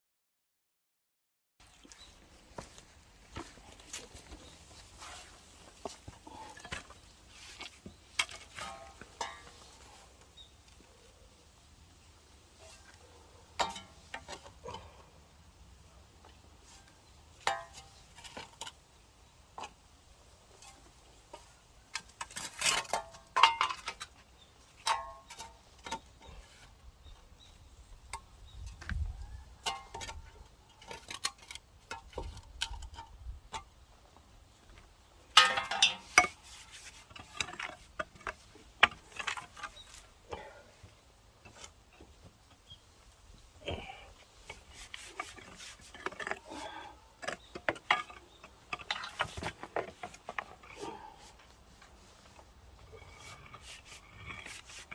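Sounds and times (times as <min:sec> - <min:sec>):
clinks and knocks of hard objects: 0:13.6 - 0:14.9, 0:20.6 - 0:24.2, 0:24.8 - 0:26.4, 0:29.6 - 0:30.2, 0:35.3 - 0:40.5, 0:44.5 - 0:50.9
scraping: 0:43.7 - 0:54.9.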